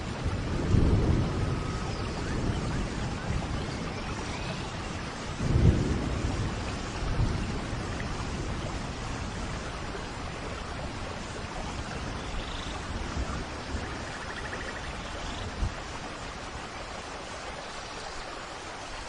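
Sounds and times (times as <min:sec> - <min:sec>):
thunder rumbling: 0:00.0 - 0:17.0
steady rain: 0:00.0 - 0:19.0.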